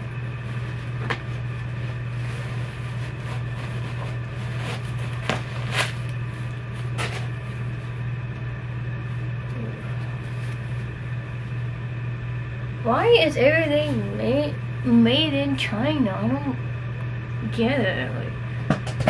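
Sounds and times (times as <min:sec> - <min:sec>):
steady low hum: 0:00.0 - 0:19.0
paper crinkling: 0:00.4 - 0:07.7.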